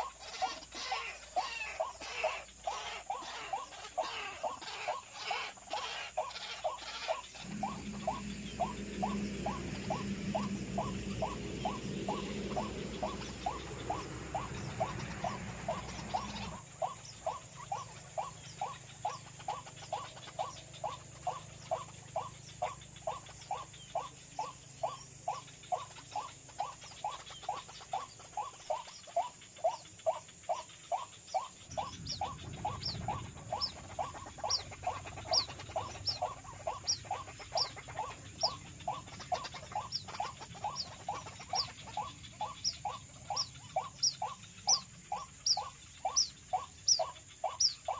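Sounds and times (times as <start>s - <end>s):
low rumble: 7.3s - 17.2s, 31.6s - 43.3s.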